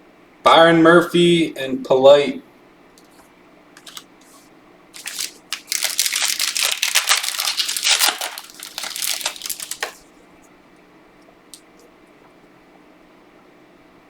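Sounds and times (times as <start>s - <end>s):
plastic wrapper crinkling and tearing: 3.8s - 4.1s, 5.0s - 10.0s.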